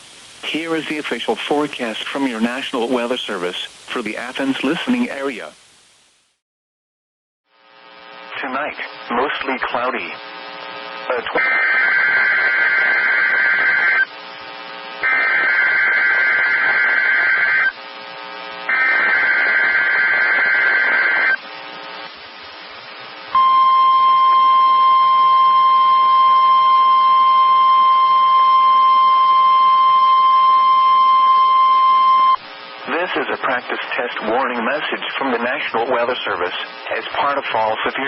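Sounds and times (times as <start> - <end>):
shrill data tone bursts: 23.4 - 32.4.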